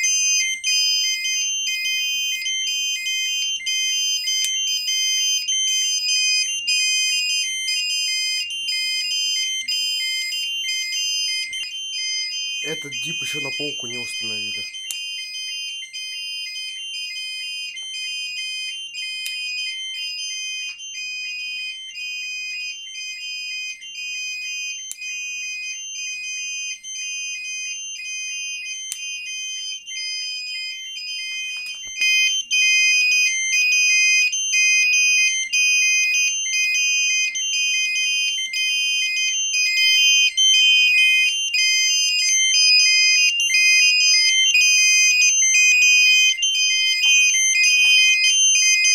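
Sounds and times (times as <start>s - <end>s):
fire alarm beepers pulsing: 0.0s - 48.9s.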